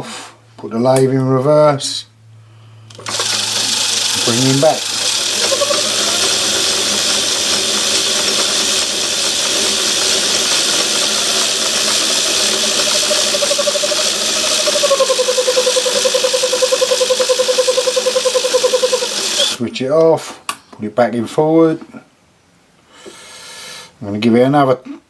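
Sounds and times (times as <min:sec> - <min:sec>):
lathe motor whining: 0:02.9 - 0:19.7.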